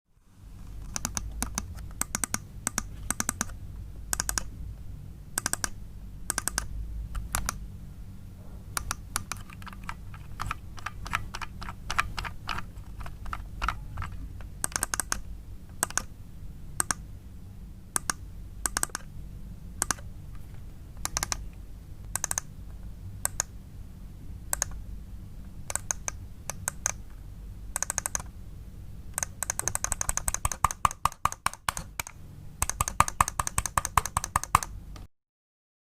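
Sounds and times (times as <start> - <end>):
scroll wheel ticking: 0.8 - 3.5, 4.1 - 4.5, 5.4 - 7.6, 13.2 - 15.2, 18.0 - 19.1, 19.8 - 20.0, 22.2 - 22.5, 24.5 - 24.8, 27.8 - 28.3, 29.2 - 34.7
mouse buttons clicking: 0.8 - 4.5, 5.4 - 7.6, 8.8 - 15.2, 15.8 - 16.1, 16.8 - 17.0, 18.0 - 19.1, 19.8 - 20.1, 21.0 - 21.4, 22.1 - 22.5, 24.5 - 24.8, 25.7 - 27.0, 27.8 - 28.3, 29.2 - 34.7
low hum: 3.4 - 8.9.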